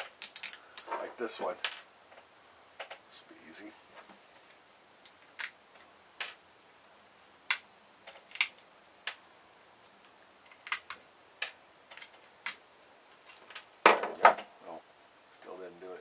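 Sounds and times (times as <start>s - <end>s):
hand tool clicking and snapping on plastic: 0.0s - 0.9s, 7.5s - 9.2s, 10.5s - 13.7s.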